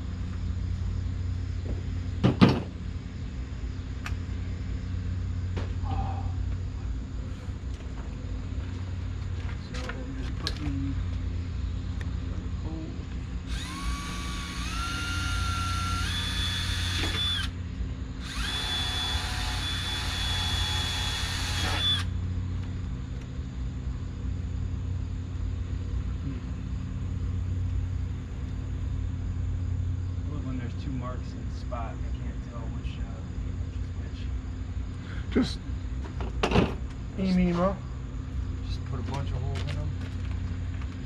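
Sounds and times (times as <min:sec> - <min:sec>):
steady low hum: 0:00.0 - 0:41.0
power drill motor whine: 0:13.4 - 0:17.6, 0:18.2 - 0:22.2.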